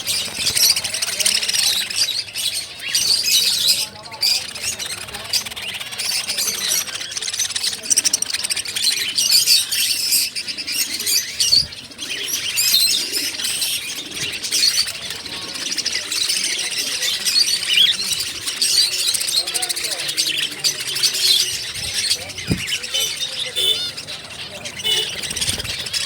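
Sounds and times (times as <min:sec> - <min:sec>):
caged birds chirping: 0:00.0 - 0:26.0.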